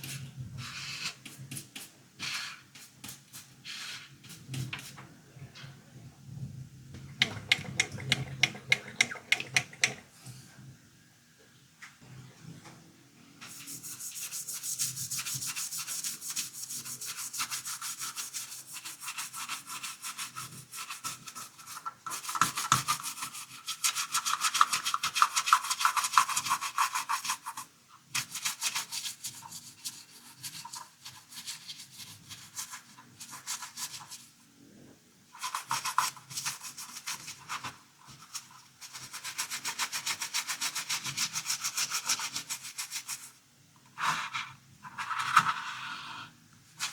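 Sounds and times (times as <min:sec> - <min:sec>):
brush scrubbing a toy: 0:13.5 - 0:34.3, 0:35.4 - 0:43.4.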